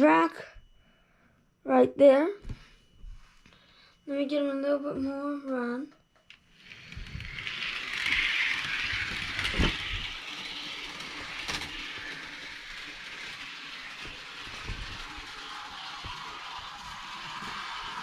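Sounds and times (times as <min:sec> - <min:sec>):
model train motor whirring: 0:06.4 - 0:18.0.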